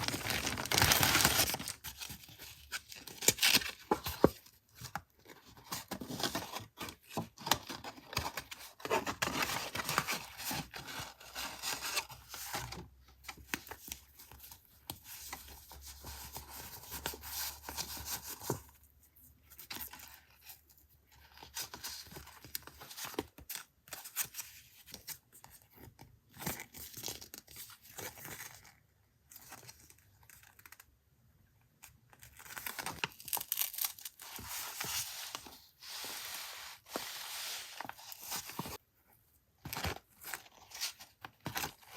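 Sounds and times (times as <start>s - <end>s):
paper rustling and tearing: 0.0s - 2.2s.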